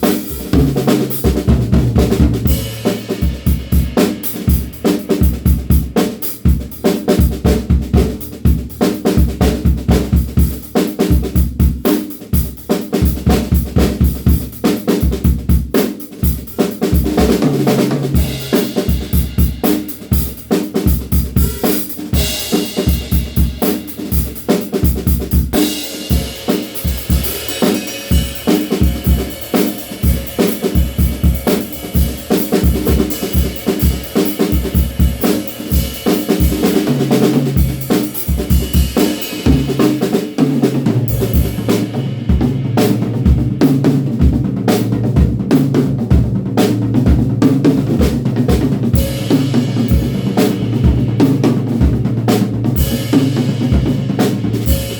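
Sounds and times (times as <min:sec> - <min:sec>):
bass drum: 0:00.0 - 0:15.7, 0:16.3 - 0:54.9
snare drum: 0:00.0 - 0:54.9.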